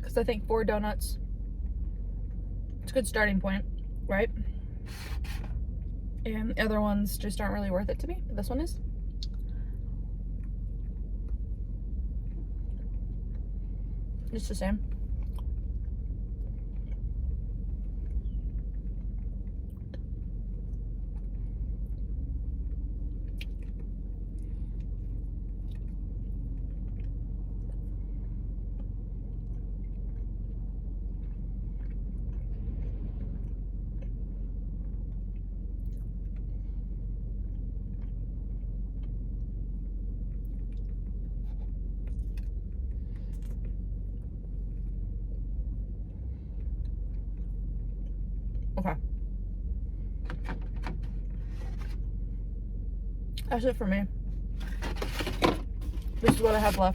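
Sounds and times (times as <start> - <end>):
low rumble: 0.0 - 56.9
person chewing a donut: 15.0 - 45.4.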